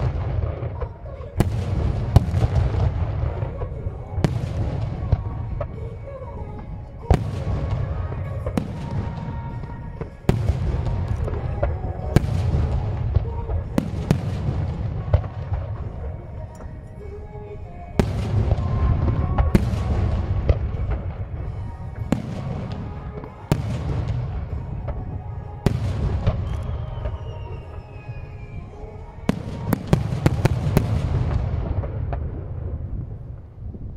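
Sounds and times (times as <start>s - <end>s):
low rumble of launches: 0.0s - 33.9s
faint falling whistle: 24.5s - 30.0s.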